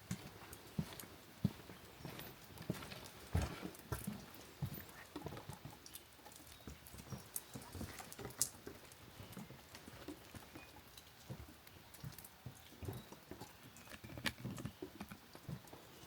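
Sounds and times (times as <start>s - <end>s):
footsteps walking: 0.0s - 10.6s.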